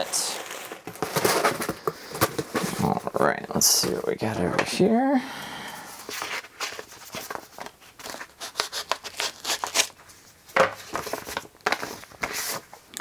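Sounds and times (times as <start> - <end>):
paper rustling and crinkling: 0.0 - 4.8, 6.0 - 12.9
rummaging through a box: 0.0 - 5.0, 5.8 - 12.9.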